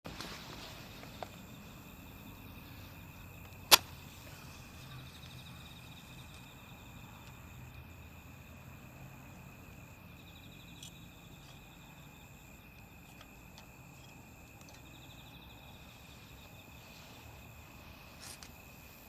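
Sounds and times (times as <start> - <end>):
crickets chirring: 0.1 - 19.0
burning wood popping: 3.4 - 4.4.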